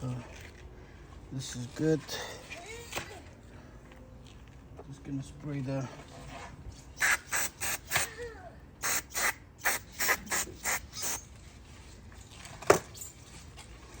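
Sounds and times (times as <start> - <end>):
aerosol spray hissing bursts: 7.0 - 8.1, 8.8 - 11.2.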